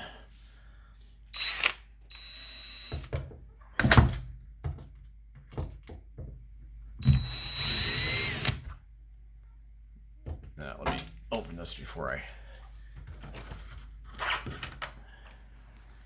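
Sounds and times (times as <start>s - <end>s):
power drill whirring: 1.3s - 3.1s, 7.0s - 8.7s
door handle hardware knocks and clicks: 3.0s - 6.4s.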